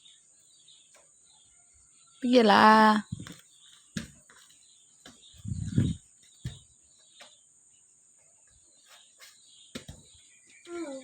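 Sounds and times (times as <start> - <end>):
knocks and bumps: 5.1 - 6.7.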